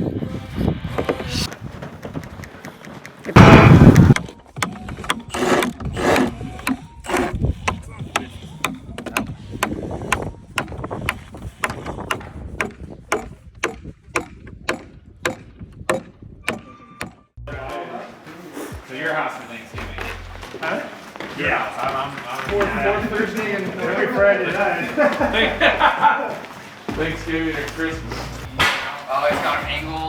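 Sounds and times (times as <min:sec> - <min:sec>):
loud thump: 0:03.4 - 0:04.2.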